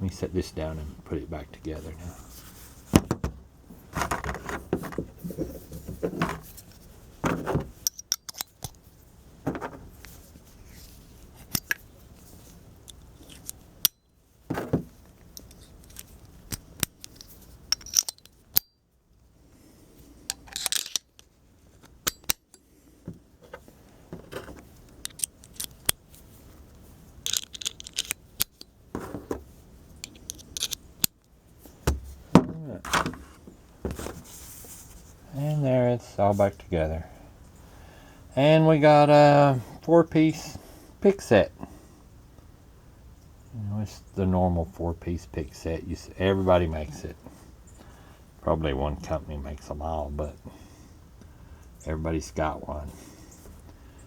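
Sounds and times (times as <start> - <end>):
handling rustles: 0.7 - 13.7, 23.0 - 30.9, 31.5 - 35.6
screwdriver bits clicking and sliding: 27.2 - 28.7, 30.0 - 30.8.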